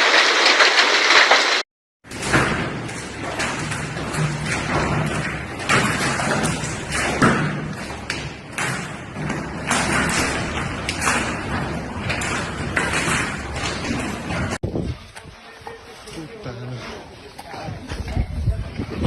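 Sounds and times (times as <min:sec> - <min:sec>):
hail pelting hard surfaces: 0:00.0 - 0:01.6.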